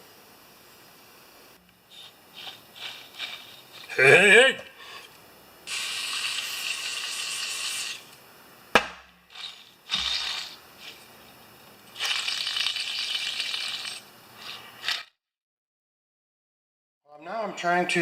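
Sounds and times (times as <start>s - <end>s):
sharp metal knock: 8.8s - 9.2s.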